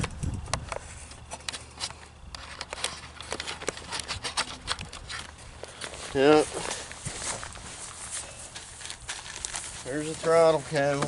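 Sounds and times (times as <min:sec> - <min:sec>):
mower parts clicking and knocking: 0:00.0 - 0:06.9, 0:10.2 - 0:11.0.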